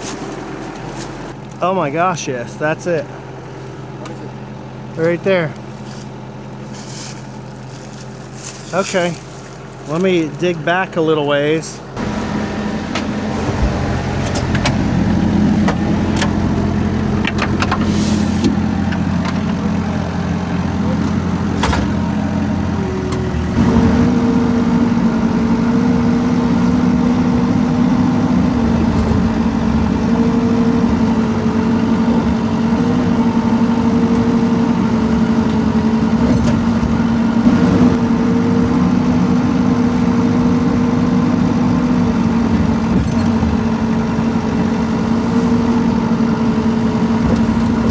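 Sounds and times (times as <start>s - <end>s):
excavator diesel engine: 0.0s - 47.9s
hydraulic whine: 11.7s - 47.9s.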